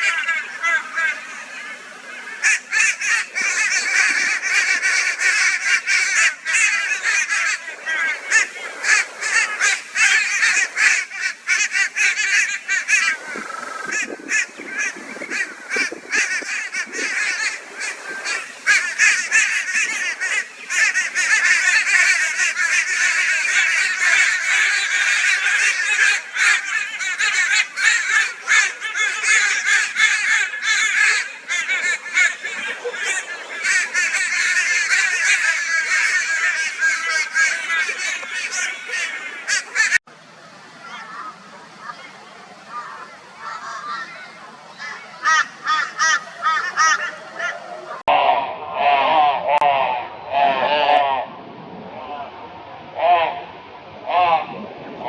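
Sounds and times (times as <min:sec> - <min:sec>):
crows calling raucously: 0:00.0 - 0:40.0, 0:44.8 - 0:47.6.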